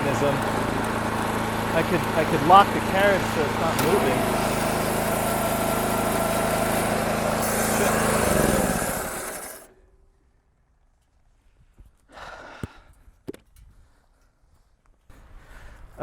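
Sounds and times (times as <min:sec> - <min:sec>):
bandsaw sawmill engine running: 0:00.0 - 0:09.8.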